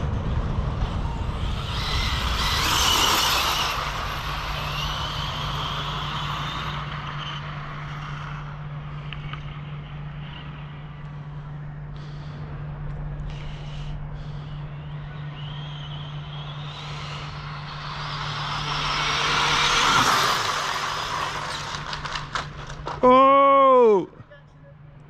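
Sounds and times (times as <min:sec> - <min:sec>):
electric rc car speeding past: 0:00.0 - 0:11.2, 0:14.7 - 0:23.0
steady low hum: 0:00.0 - 0:25.0.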